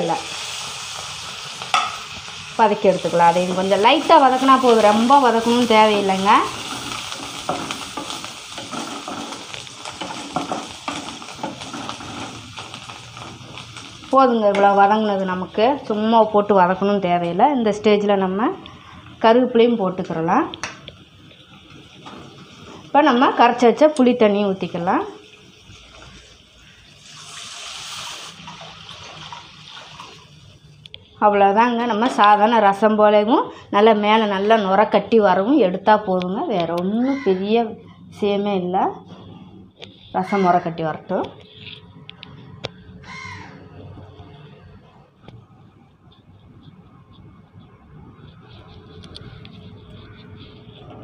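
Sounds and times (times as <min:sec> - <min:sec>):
low sizzle: 0:00.0 - 0:51.0
spoon stirring and scraping: 0:04.7 - 0:14.0, 0:48.2 - 0:51.0
liquid poured into hot pan: 0:25.0 - 0:30.6.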